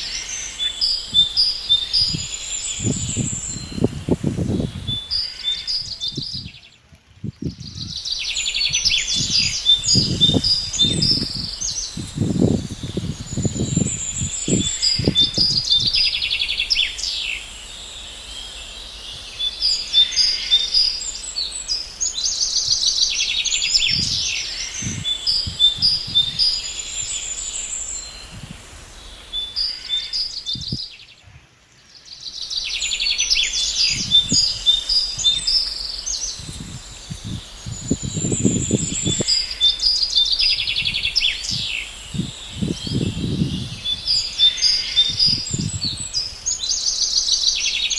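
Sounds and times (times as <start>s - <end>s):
songbirds chirping and trilling: 0.0s - 47.9s.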